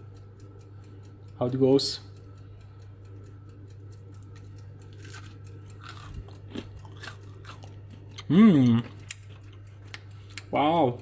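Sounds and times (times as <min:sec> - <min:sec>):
steady low hum: 0:00.0 - 0:11.0
person chewing crunchy food: 0:04.2 - 0:10.5.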